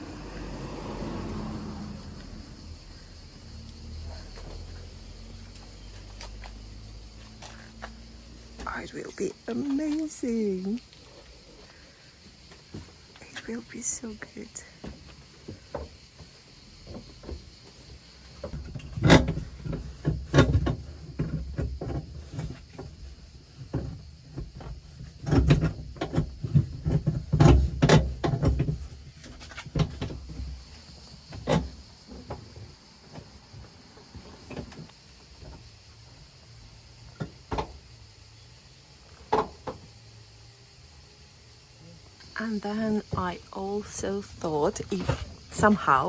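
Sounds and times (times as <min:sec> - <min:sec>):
vehicle panels knocking and rattling: 0:14.9 - 0:35.7.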